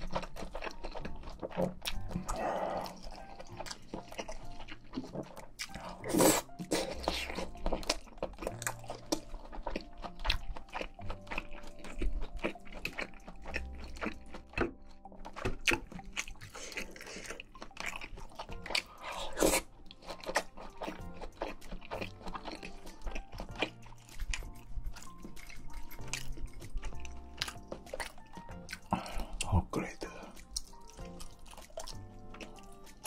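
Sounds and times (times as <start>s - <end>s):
crunching and chewing: 0.0s - 33.0s
soft background music: 0.0s - 33.0s.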